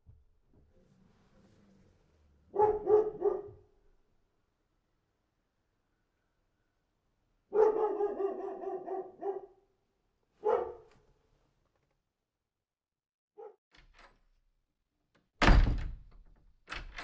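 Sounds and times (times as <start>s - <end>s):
dog short bark: 10.4s - 10.9s.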